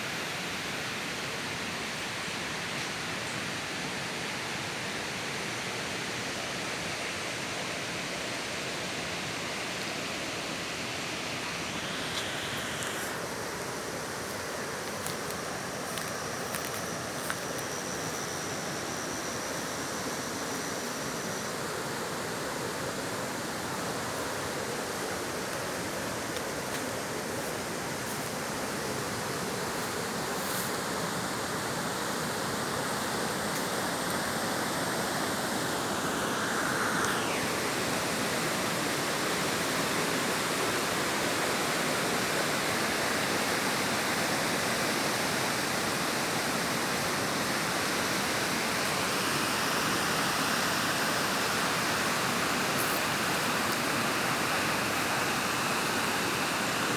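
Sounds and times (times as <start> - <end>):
running water rushing: 9.0 - 56.9.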